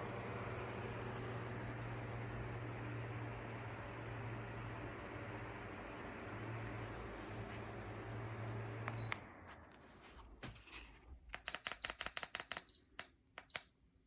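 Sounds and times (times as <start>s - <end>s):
ceiling fan whoosh and hum: 0.0s - 11.1s.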